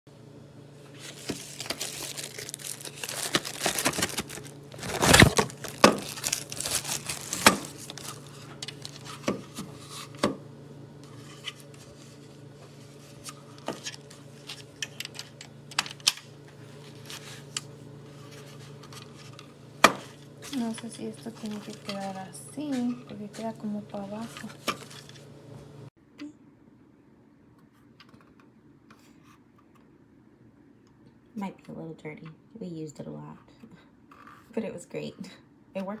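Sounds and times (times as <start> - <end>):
packaging crinkling and tearing: 1.0 - 10.0.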